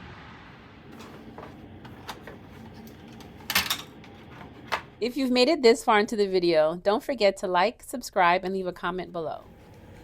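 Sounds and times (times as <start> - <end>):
low background hum: 0.4 - 10.0.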